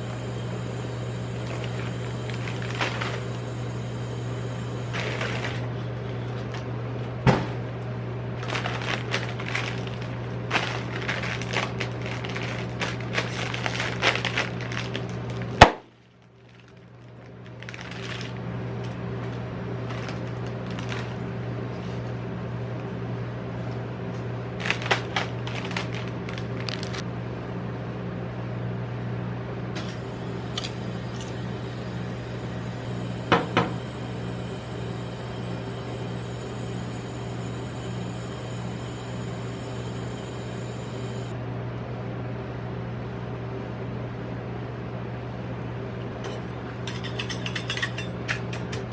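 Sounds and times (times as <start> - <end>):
steady low hum: 0.0 - 48.9
metal spatulas scraping and tapping: 46.3 - 48.9.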